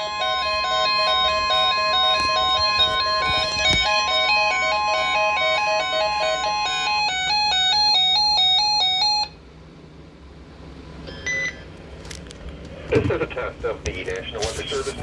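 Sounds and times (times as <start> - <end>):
bright electronic melody: 0.0 - 3.3
steady alarm tone: 0.0 - 9.4
low hum and hiss: 0.0 - 15.0.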